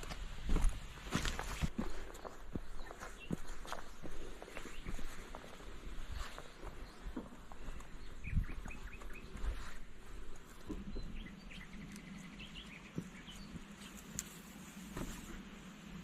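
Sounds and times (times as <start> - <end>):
small bird chirping: 6.2 - 9.9.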